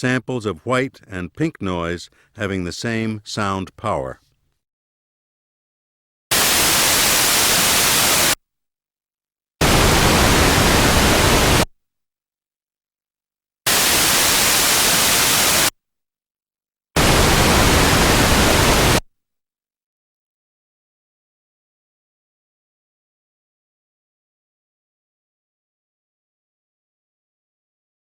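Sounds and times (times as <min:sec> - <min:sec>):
pink noise bursts: 0:06.3 - 0:08.4, 0:09.6 - 0:11.7, 0:13.7 - 0:15.7, 0:17.0 - 0:19.0
white noise bursts: 0:06.3 - 0:08.4, 0:09.6 - 0:11.7, 0:13.7 - 0:15.7, 0:17.0 - 0:19.0.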